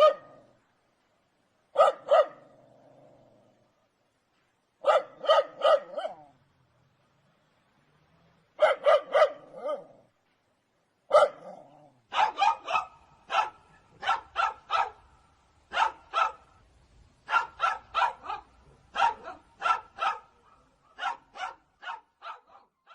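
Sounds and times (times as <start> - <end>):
dog barking: 0.0 - 0.5, 1.7 - 2.5, 4.8 - 6.4, 8.6 - 10.0, 11.1 - 15.1, 15.7 - 16.5, 17.2 - 22.9.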